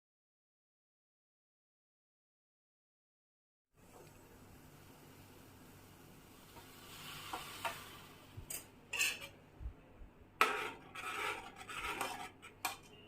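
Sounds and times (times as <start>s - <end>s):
spoon scraping a frying pan: 6.6s - 9.4s, 10.4s - 13.0s.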